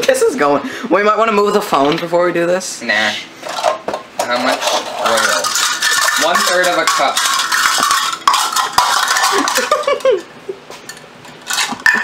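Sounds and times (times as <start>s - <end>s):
utensils and dishes clattering: 3.4s - 12.0s.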